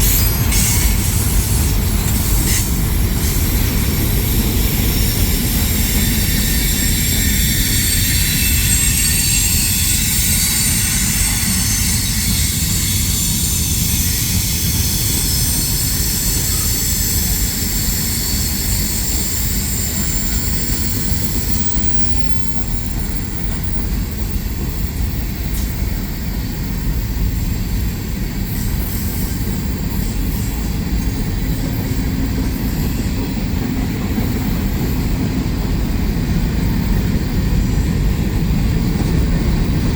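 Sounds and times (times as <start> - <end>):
freight train rumbling: 0.0 - 39.9
high-pitched wheel squeal: 2.5 - 22.8.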